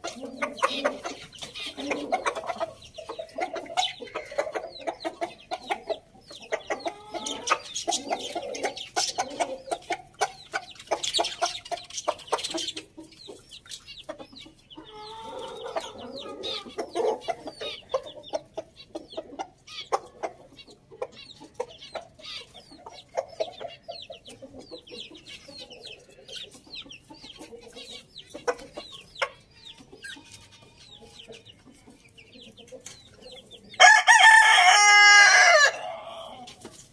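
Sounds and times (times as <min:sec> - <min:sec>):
chickens clucking: 0:00.0 - 0:36.9
rooster crowing: 0:33.8 - 0:36.4.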